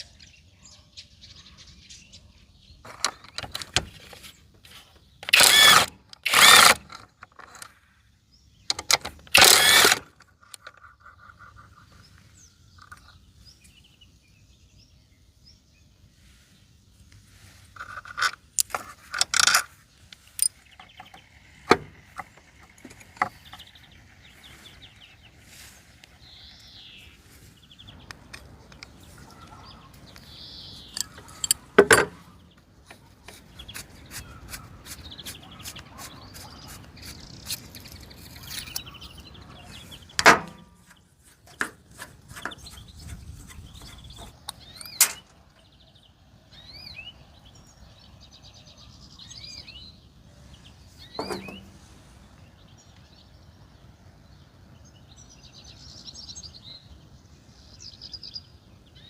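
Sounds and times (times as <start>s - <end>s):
birds chirping faintly: 0.0s - 59.0s
sharp knocks and clicks: 20.7s - 23.7s, 51.2s - 51.7s.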